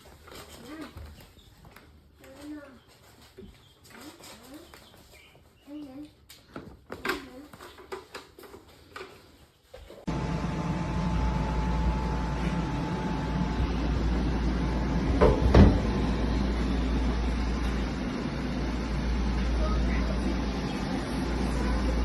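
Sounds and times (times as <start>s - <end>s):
air conditioner fan humming: 10.1s - 22.0s
louder knocks: 15.1s - 16.0s.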